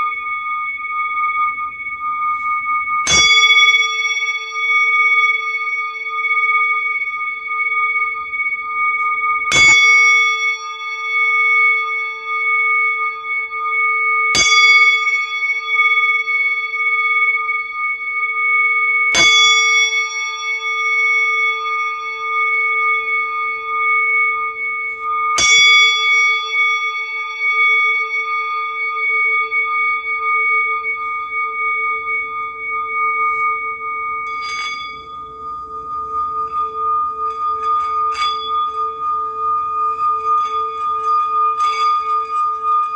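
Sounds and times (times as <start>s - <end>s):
singing bowls ringing: 0.0s - 42.9s.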